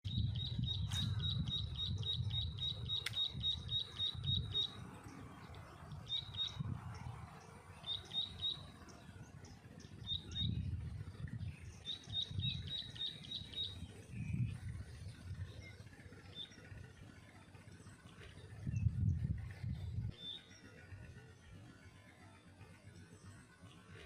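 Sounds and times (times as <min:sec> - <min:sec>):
low rumble: 0:00.1 - 0:07.4, 0:17.9 - 0:20.2
bird chirping rapidly: 0:00.1 - 0:14.6, 0:18.6 - 0:21.0.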